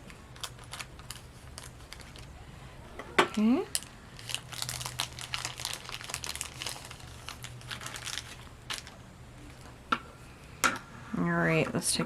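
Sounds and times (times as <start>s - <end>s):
packaging crinkling: 0.0s - 2.4s, 3.3s - 9.7s.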